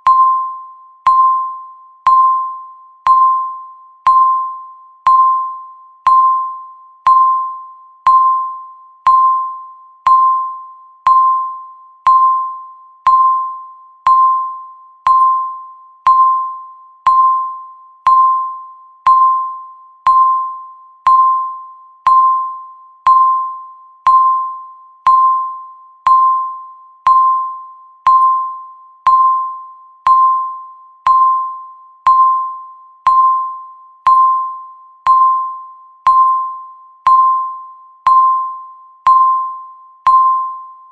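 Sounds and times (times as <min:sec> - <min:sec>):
countdown timer beeping: 0:00.0 - 0:40.8.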